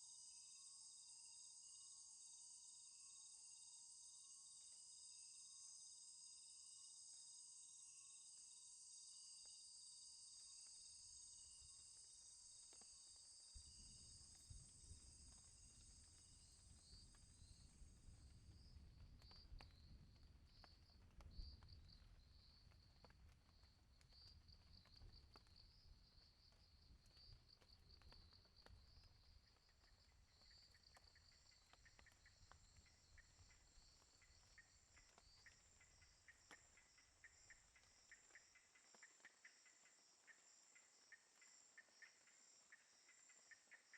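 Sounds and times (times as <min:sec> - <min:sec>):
insects trilling and chirping: 0:00.0 - 0:43.9
faint ticks: 0:09.2 - 0:43.9.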